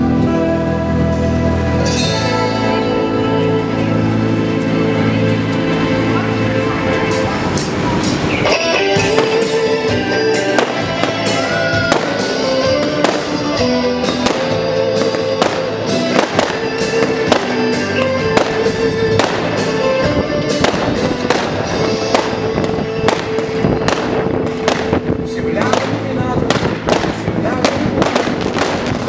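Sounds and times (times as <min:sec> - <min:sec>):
music with sustained melodic tones: 0:00.0 - 0:29.0
fireworks bursting with sharp bangs: 0:07.6 - 0:29.0.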